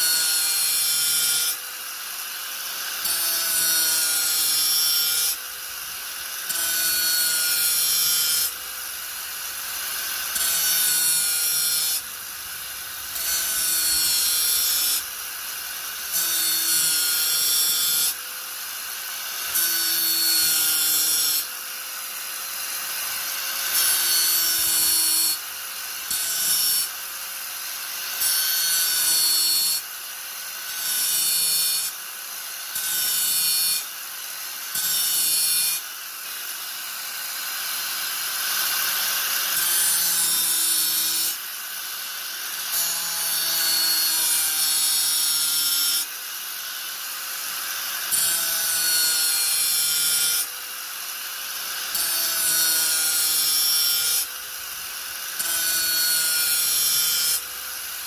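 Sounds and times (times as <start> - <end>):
angle grinder whining: 0.0 - 18.7
grinder disc cutting workpiece: 0.0 - 58.0.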